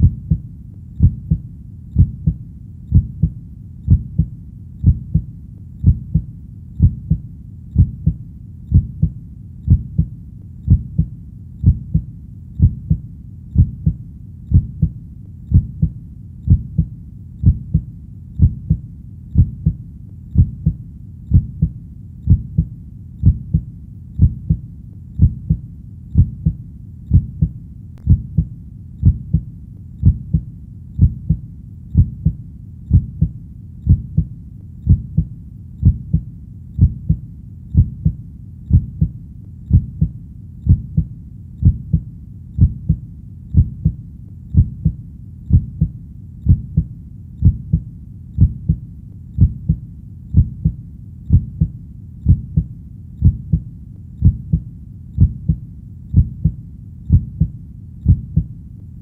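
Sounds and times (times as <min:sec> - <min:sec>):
heartbeat double thump: 0:00.0 - 0:00.4, 0:01.0 - 0:01.4, 0:02.0 - 0:07.2, 0:07.8 - 0:10.1, 0:10.7 - 0:13.0, 0:13.6 - 0:18.8, 0:19.4 - 0:19.8, 0:20.4 - 0:24.6, 0:25.2 - 0:25.6, 0:26.2 - 0:30.4, 0:31.0 - 0:31.4, 0:32.0 - 0:33.3, 0:33.9 - 0:34.3, 0:34.9 - 0:36.2, 0:36.8 - 0:37.2, 0:37.8 - 0:40.1, 0:40.7 - 0:42.0, 0:42.6 - 0:43.0, 0:43.6 - 0:44.0, 0:44.6 - 0:47.8, 0:48.4 - 0:48.8, 0:49.4 - 0:49.8, 0:50.4 - 0:53.6, 0:54.2 - 0:54.6, 0:55.2 - 0:58.5.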